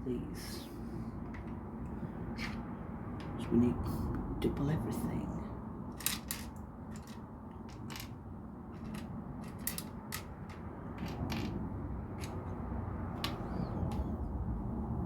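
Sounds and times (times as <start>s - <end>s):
low background rumble: 0.0s - 15.0s
plastic pieces clicking: 6.0s - 11.6s.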